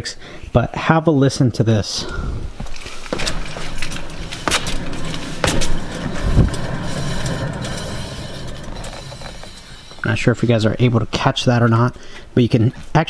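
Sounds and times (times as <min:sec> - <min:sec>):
wheel bearing humming: 0:02.5 - 0:11.2.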